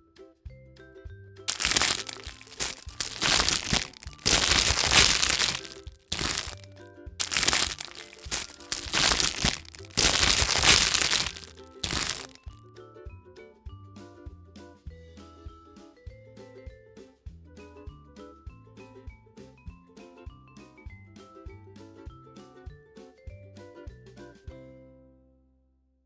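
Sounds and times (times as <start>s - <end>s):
light children's music: 0.0s - 25.0s
wrapper crinkling and tearing: 1.5s - 12.4s.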